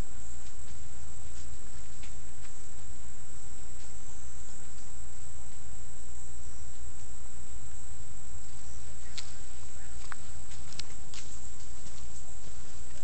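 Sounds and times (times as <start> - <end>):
insects chirring: 0.0 - 13.0.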